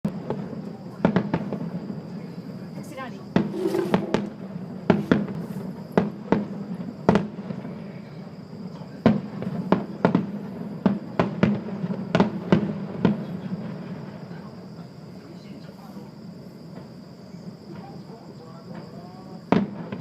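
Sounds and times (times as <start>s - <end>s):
fireworks bursting bangs: 3.3s - 7.7s.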